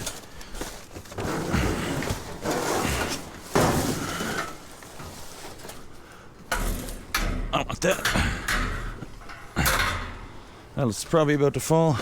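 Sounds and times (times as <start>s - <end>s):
junk scraping in dumpster: 0.0s - 7.6s.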